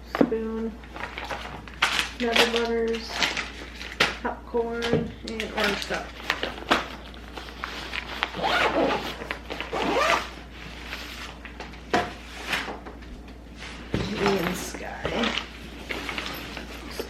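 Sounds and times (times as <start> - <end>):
zipper being pulled shut: 8.4 - 10.3.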